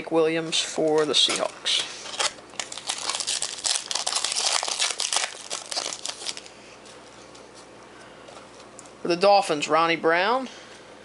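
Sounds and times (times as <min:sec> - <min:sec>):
card pack wrapper crinkling: 0:00.8 - 0:06.5.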